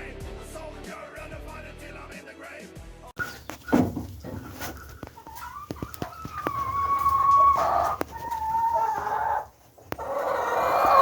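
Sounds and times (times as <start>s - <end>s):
hens calling: 3.2s - 11.0s.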